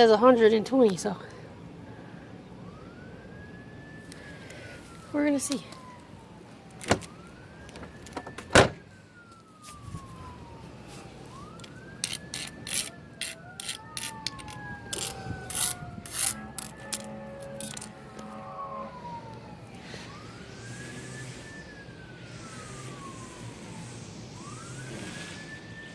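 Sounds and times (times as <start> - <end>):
distant siren wailing: 1.3 - 25.9.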